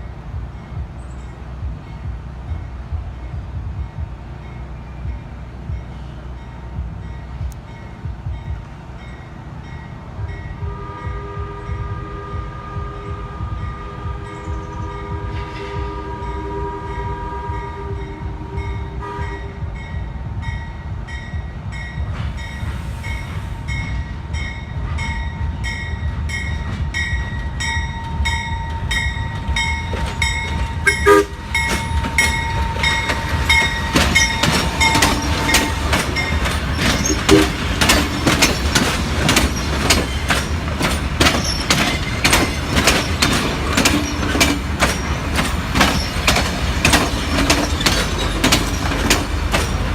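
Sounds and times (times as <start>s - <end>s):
low train rumble: 0.0s - 49.9s
train wheels clicking over rail joints: 0.0s - 49.9s
train horn: 10.5s - 20.0s, 30.8s - 37.9s.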